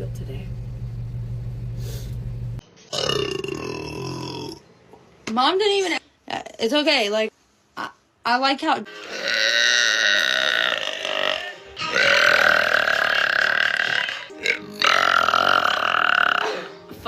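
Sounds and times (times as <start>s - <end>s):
woman burping: 2.9s - 4.6s, 9.0s - 16.9s.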